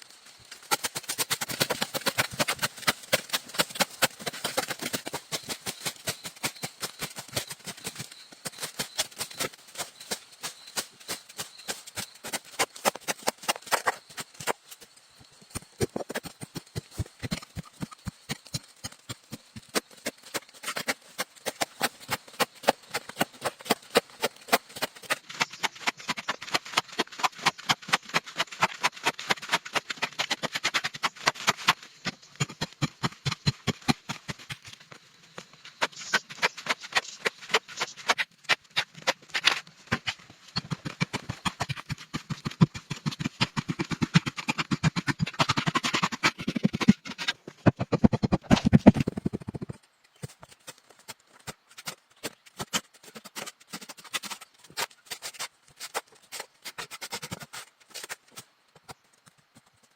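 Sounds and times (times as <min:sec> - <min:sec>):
sharp rapid knocks: 0:40.6 - 0:49.8.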